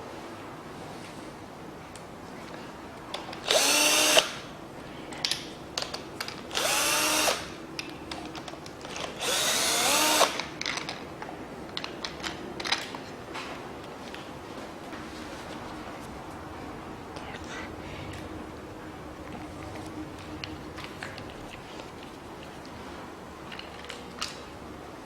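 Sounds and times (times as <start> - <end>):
power drill motor whining: 3.4 - 4.4, 6.5 - 7.6, 9.0 - 10.5.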